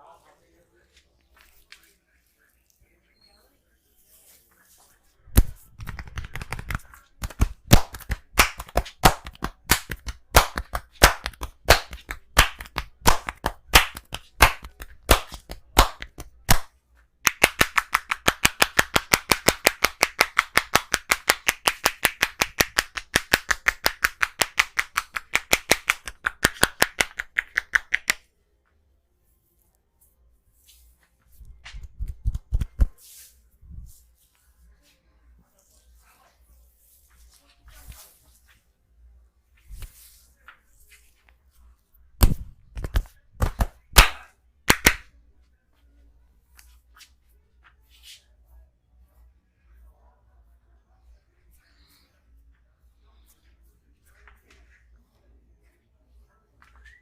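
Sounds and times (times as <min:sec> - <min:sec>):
hands slapping on body: 0:05.3 - 0:28.2, 0:31.5 - 0:33.0, 0:42.2 - 0:45.1.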